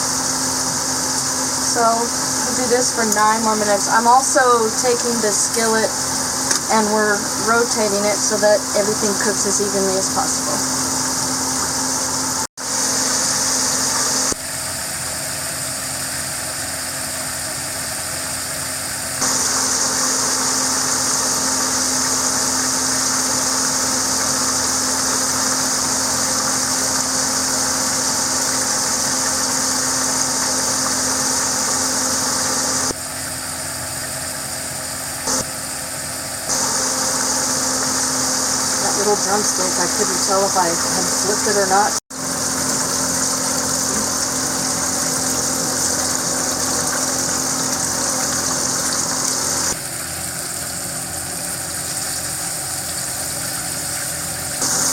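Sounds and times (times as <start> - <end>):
low steady hum: 0.0 - 15.1, 36.5 - 50.0
chicken frying in hot oil: 0.0 - 54.9.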